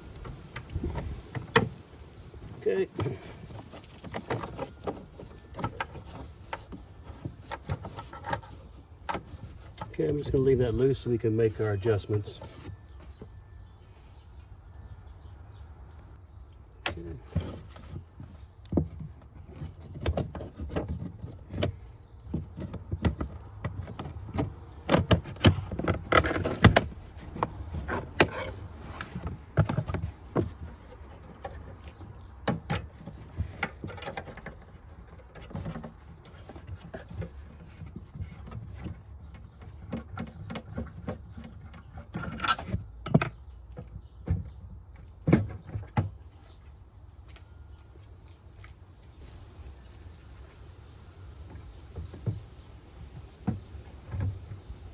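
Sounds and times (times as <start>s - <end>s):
clicks knocks and rattles: 16.7s - 46.4s.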